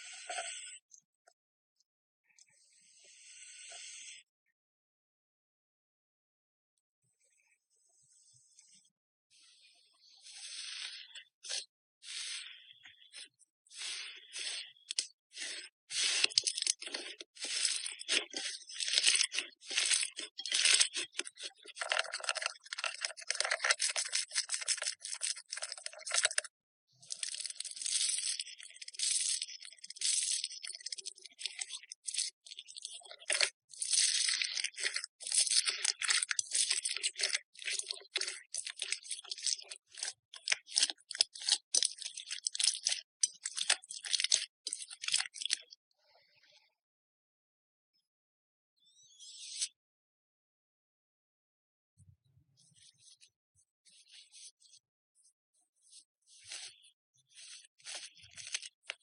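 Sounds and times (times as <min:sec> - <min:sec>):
slime crackling and popping: 0:14.4 - 0:26.5, 0:27.1 - 0:45.6.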